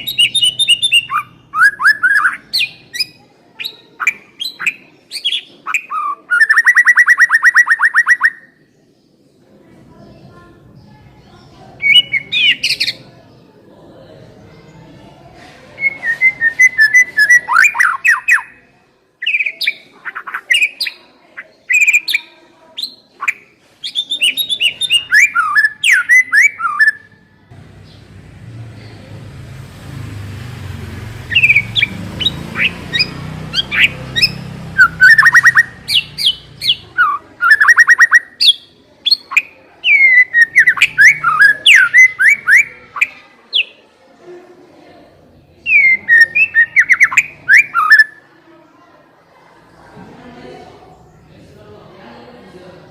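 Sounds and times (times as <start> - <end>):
bird singing whistled trills: 0.0 - 8.5, 11.8 - 13.0, 23.9 - 27.1, 31.3 - 43.7, 45.6 - 48.2.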